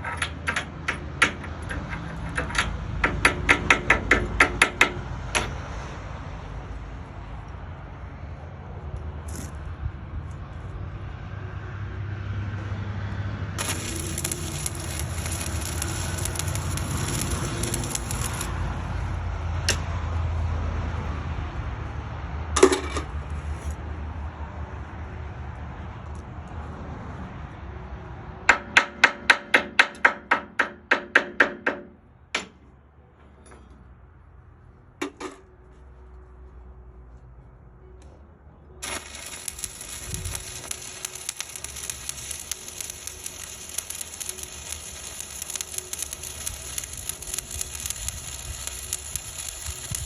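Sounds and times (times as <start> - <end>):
welding arc crackling and hissing: 13.6 - 19.0, 38.8 - 50.0.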